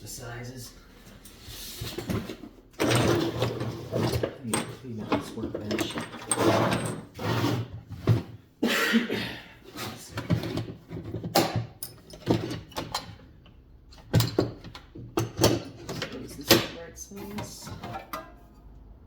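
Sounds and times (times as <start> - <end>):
objects scraping on workbench: 1.0 - 8.4, 9.7 - 11.4.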